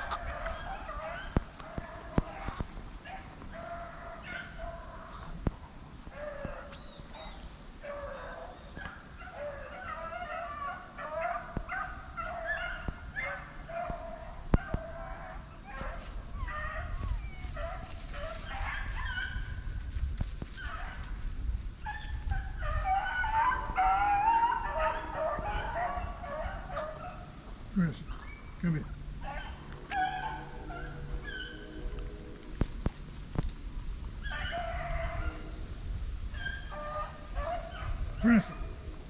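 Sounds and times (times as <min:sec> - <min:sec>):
dogs yipping and baying: 0:00.0 - 0:05.4, 0:06.1 - 0:19.7, 0:21.8 - 0:27.5, 0:29.2 - 0:31.9, 0:34.2 - 0:35.5, 0:36.3 - 0:38.8.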